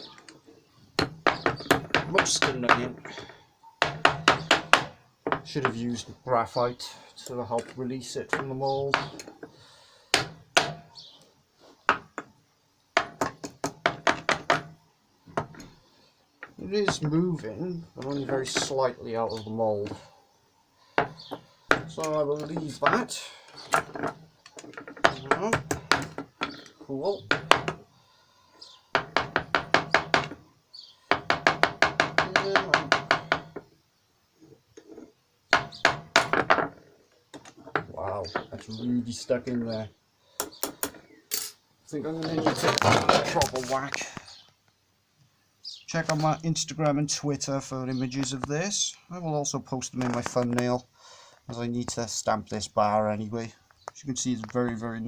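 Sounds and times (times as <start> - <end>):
knocking on metal mould: 1.0 - 3.0, 3.8 - 5.5, 13.0 - 14.7, 31.1 - 33.6.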